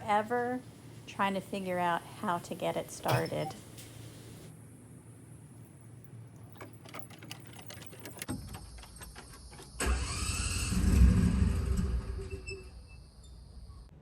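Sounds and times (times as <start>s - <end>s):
mower engine starting and running: 9.8s - 12.4s.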